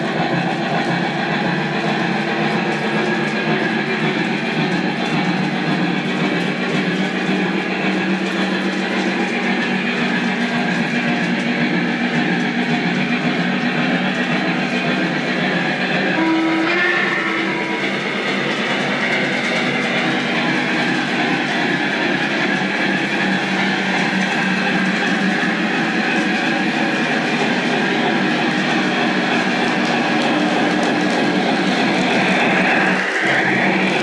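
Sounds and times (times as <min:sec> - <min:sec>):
model train rolling on track: 0:00.0 - 0:34.0
held tones: 0:16.1 - 0:19.0.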